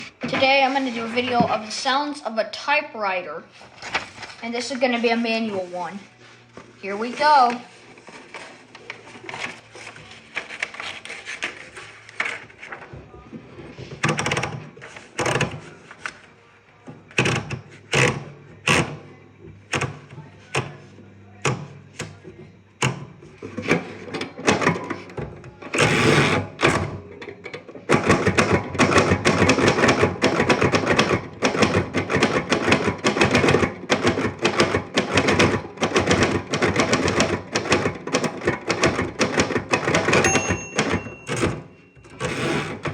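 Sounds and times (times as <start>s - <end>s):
scraping sound: 0.0s - 1.9s
typewriter keys clattering: 27.9s - 42.9s.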